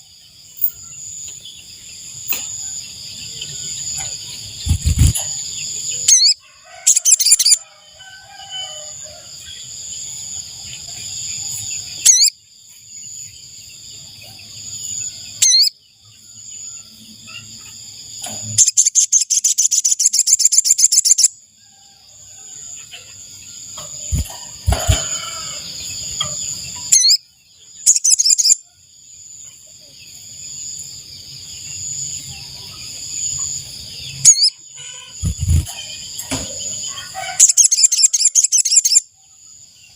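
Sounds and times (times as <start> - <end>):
high insect-like drone: 3.4 - 12.3, 23.8 - 26.6, 34.3 - 38.1.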